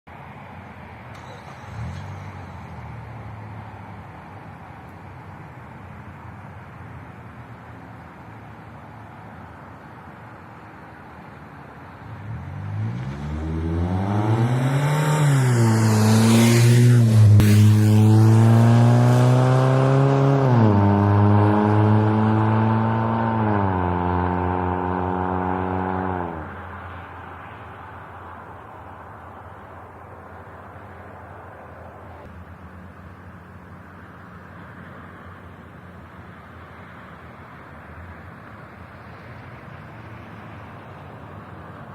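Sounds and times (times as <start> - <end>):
loud raspy car exhaust: 12.3 - 26.9.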